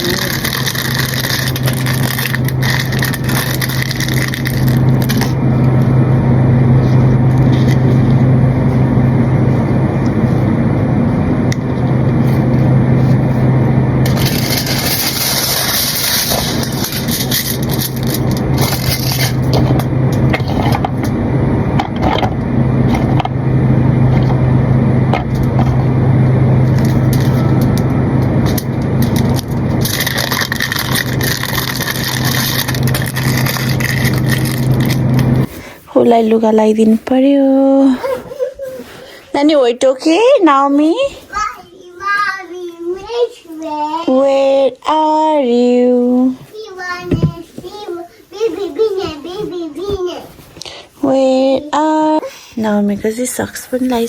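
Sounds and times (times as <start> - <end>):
scraping and rustling: 0.0 - 6.0, 11.7 - 21.2, 26.6 - 37.3, 46.3 - 51.8
low motor hum: 0.0 - 38.2.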